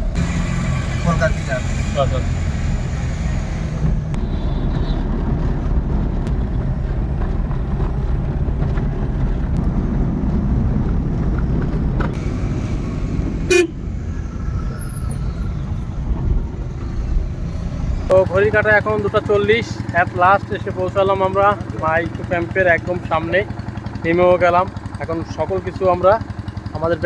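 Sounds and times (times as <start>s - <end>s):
vehicle low rumble: 0.0s - 27.0s
short horn toot: 13.4s - 13.9s.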